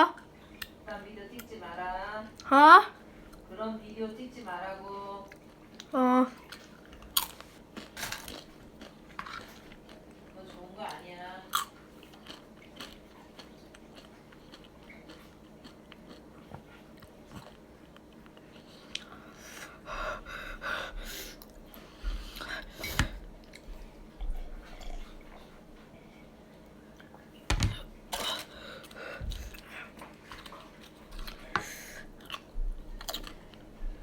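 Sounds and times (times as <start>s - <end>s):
chips crunching while chewed: 6.5s - 10.2s, 11.5s - 19.1s.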